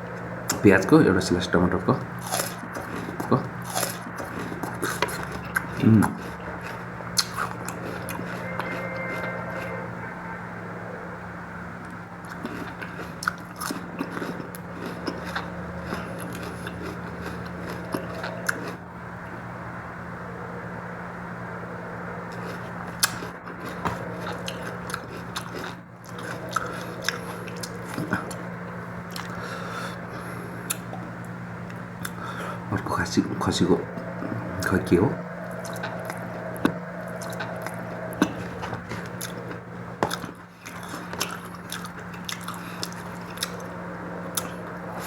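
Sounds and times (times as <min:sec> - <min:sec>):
steady low hum: 0:00.0 - 0:45.0
chewing and biting food: 0:00.5 - 0:09.7, 0:11.8 - 0:18.9, 0:22.3 - 0:33.2, 0:34.0 - 0:45.0
wet mouth clicks and smacks: 0:07.2 - 0:07.6.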